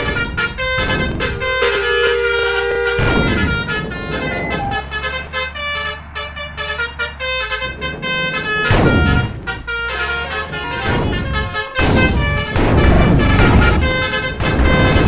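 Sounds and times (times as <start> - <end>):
loud rushing burst of noise: 0.0 - 10.6
musical air horn tune: 0.0 - 15.0
vehicle engine running: 0.0 - 15.0.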